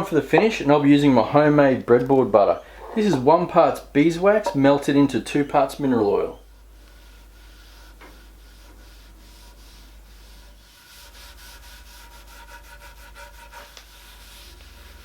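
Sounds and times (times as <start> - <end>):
rubbing on wooden board: 6.6 - 15.0.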